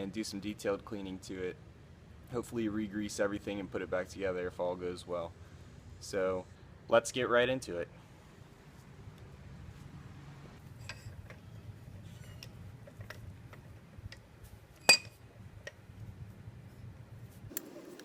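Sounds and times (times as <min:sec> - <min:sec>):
hand tools tapping on metal: 0:17.5 - 0:18.0.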